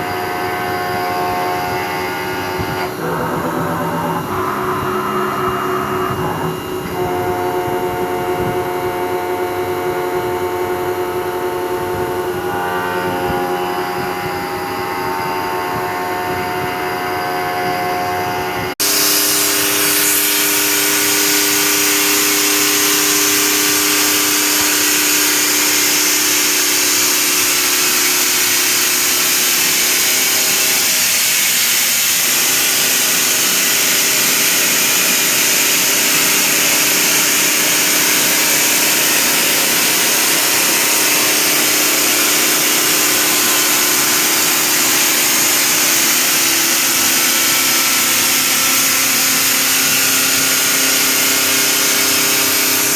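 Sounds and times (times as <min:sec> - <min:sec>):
milling machine hissing and humming: 0:00.0 - 0:52.9
other machine running: 0:00.0 - 0:52.9.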